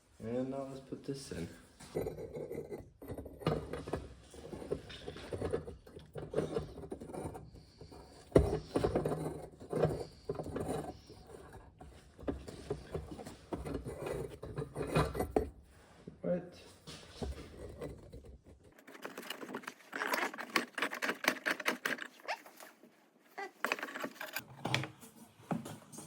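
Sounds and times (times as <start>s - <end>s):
metal scraping and knocking: 1.8s - 15.7s, 16.8s - 22.6s.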